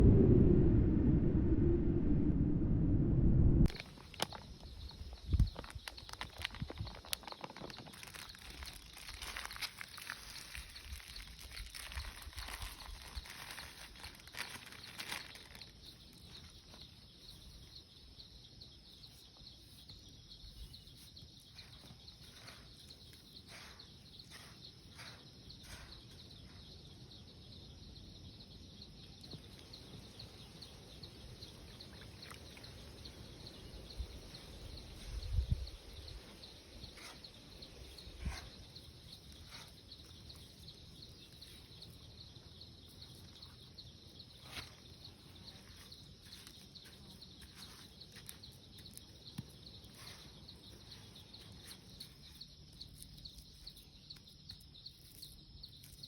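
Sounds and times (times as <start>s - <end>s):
dull low thumps: 0.0s - 3.8s.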